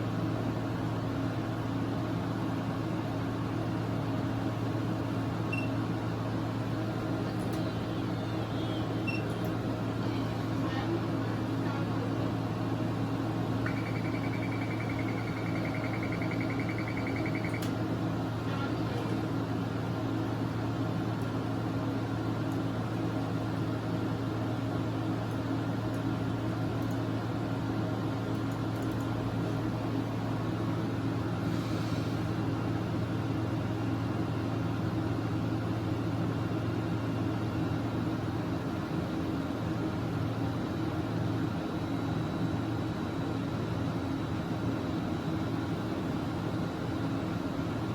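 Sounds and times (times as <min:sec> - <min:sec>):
scanner machine hum: 0:00.0 - 0:31.4.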